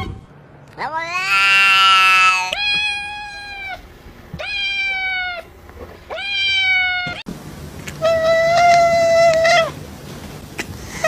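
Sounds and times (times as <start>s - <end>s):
cat meowing: 0.8s - 3.8s, 4.4s - 5.5s, 6.1s - 7.2s, 8.0s - 9.8s.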